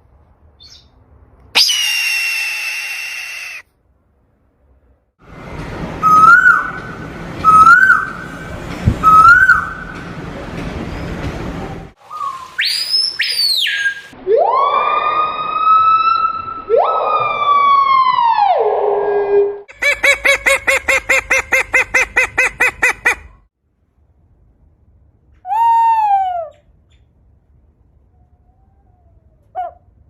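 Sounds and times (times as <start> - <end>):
loud wailing bird calls: 1.6 - 3.6
short rising whistled bird notes: 1.6 - 3.6.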